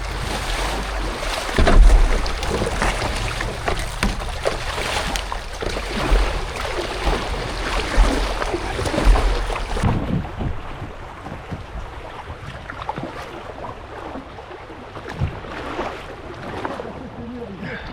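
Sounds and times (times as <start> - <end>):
wind rumble on microphone: 0.0 - 14.0
river water splashing around kayak: 0.0 - 17.8.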